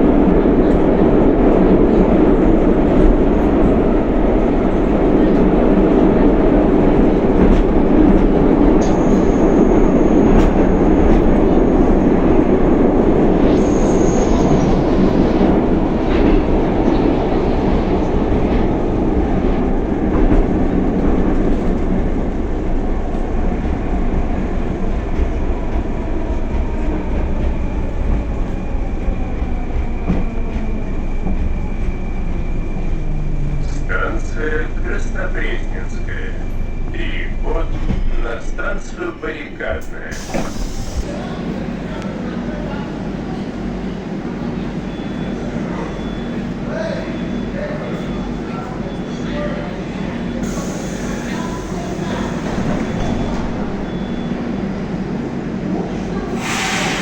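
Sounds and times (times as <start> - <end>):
train wheels rumbling on rail: 0.0 - 57.0
steady high whine: 12.0 - 16.6.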